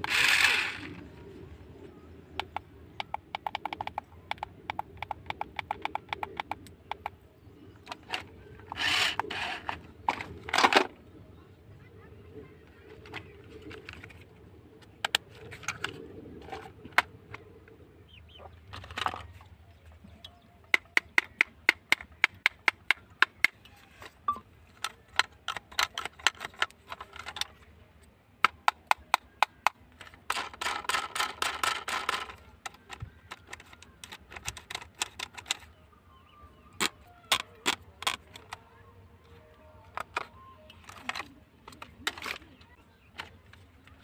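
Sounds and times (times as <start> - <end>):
sharp clicks and snaps: 2.3 - 7.2, 28.4 - 35.8.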